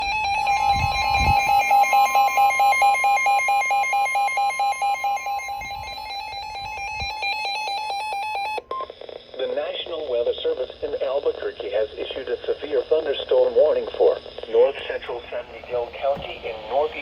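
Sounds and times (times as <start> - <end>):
rapid beeping tone: 0.0 - 17.0.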